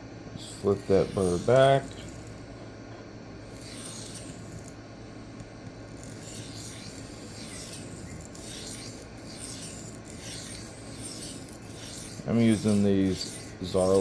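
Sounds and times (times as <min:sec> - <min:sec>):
knife scraping on sharpening plate: 0:00.4 - 0:02.4, 0:03.5 - 0:04.7, 0:06.0 - 0:14.0.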